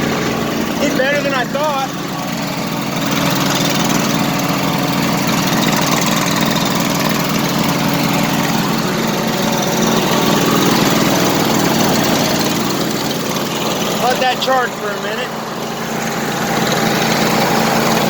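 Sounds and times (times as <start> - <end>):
riding lawn mower engine running: 0.0 - 18.0.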